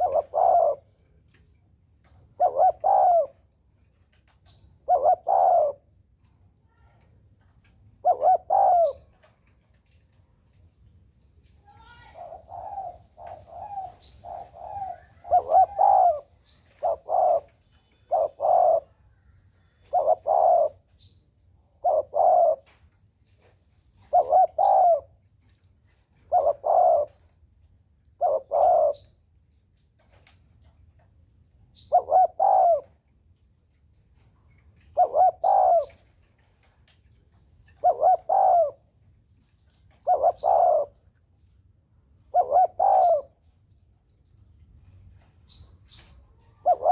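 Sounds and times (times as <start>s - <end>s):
dove cooing: 0.0s - 0.9s, 2.3s - 3.5s, 4.5s - 6.0s, 8.0s - 9.3s, 12.0s - 22.9s, 23.9s - 25.2s, 26.2s - 27.4s, 28.2s - 29.2s, 31.8s - 33.0s, 34.8s - 36.3s, 37.6s - 39.0s, 39.8s - 41.1s, 42.2s - 43.4s, 45.9s - 46.9s
faint high bird chirps: 4.4s - 5.8s, 8.0s - 9.3s, 11.6s - 22.8s, 24.0s - 25.2s, 28.0s - 29.3s, 31.7s - 33.0s, 34.2s - 36.5s, 39.7s - 41.0s, 42.2s - 43.5s, 44.8s - 46.9s.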